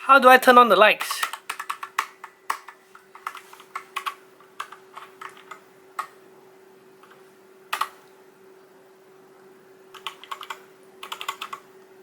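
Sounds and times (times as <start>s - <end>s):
faint hum: 0.0s - 12.0s.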